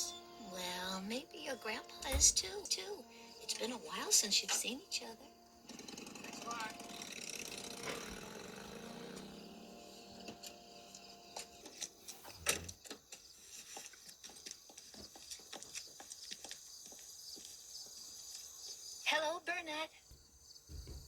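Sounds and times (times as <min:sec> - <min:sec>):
loud thud: 0:02.1 - 0:02.5
car engine winding down: 0:05.6 - 0:12.7.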